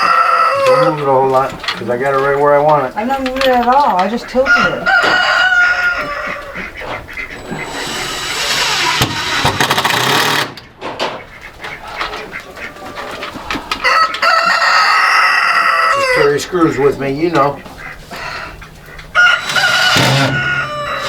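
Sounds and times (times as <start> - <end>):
rooster crowing: 0.0 - 1.0, 4.4 - 6.8, 13.7 - 16.4, 18.2 - 21.0
chickens calling: 0.0 - 21.0.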